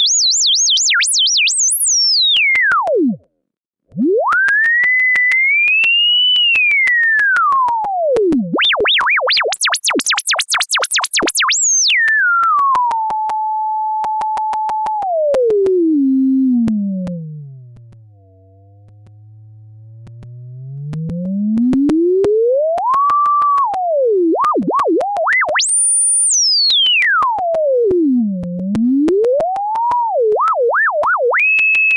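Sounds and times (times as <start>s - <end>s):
sliding sine tone: 0.0s - 3.2s, 3.9s - 31.9s
faint clicks: 14.0s - 15.8s, 16.6s - 19.4s, 20.0s - 25.7s.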